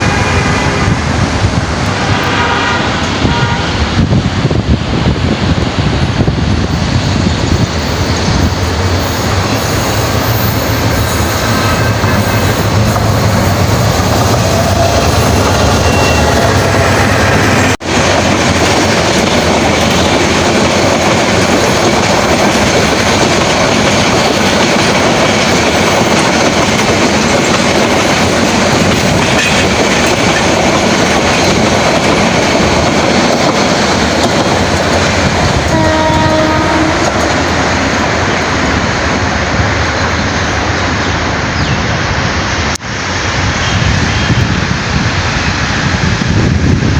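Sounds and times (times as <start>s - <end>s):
train horn tone: 0.0s - 1.1s, 1.9s - 3.9s, 14.2s - 17.8s, 35.6s - 37.6s
train rumbling past: 0.0s - 46.9s
train wheels clickety-clack: 4.0s - 40.5s.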